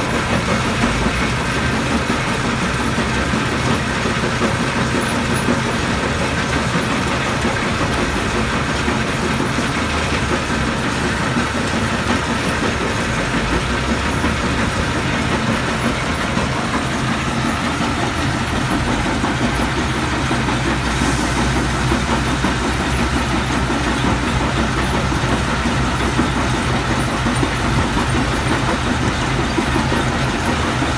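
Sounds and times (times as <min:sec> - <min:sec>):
continuous machinery rattle: 0:00.0 - 0:30.9
low engine drone: 0:07.8 - 0:30.9.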